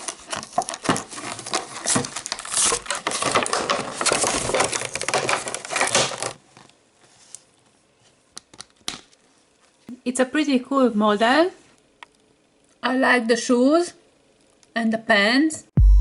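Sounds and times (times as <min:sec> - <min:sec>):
cardboard and plastic crackling: 0:00.0 - 0:07.5.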